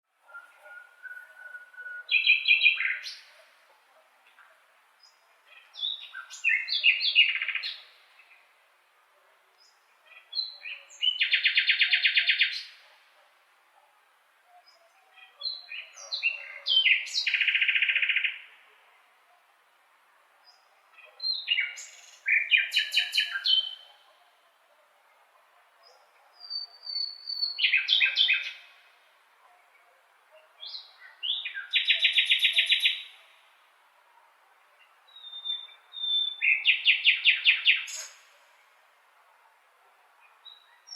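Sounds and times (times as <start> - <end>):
blackbird singing: 0.2 - 3.6, 5.0 - 8.4, 9.6 - 12.8, 14.5 - 18.6, 20.5 - 24.1, 26.0 - 28.9, 30.6 - 33.2, 34.8 - 38.3.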